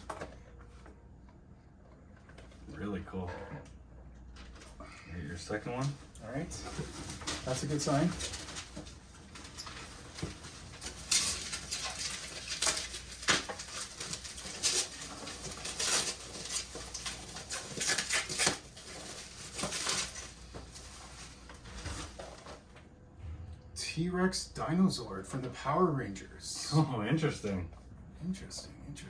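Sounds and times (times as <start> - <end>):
packaging rustling and crinkling: 5.7 - 22.8.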